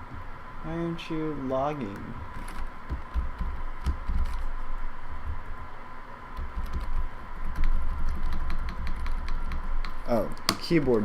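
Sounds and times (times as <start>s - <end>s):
faint steady hum: 0.0s - 11.0s
keyboard keys clicking: 6.4s - 7.0s, 7.6s - 11.0s.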